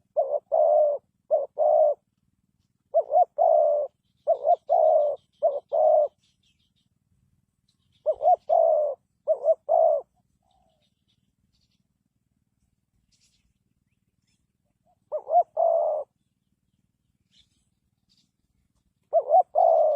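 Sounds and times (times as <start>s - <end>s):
dove cooing: 0.0s - 2.1s, 2.8s - 6.7s, 7.9s - 11.2s, 14.8s - 16.2s, 19.0s - 19.9s
small bird twittering: 2.6s - 7.0s, 7.6s - 11.9s.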